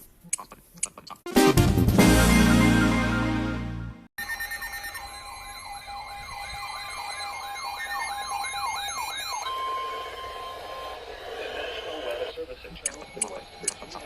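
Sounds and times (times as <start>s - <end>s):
siren-like sweeping tone: 4.2s - 12.1s.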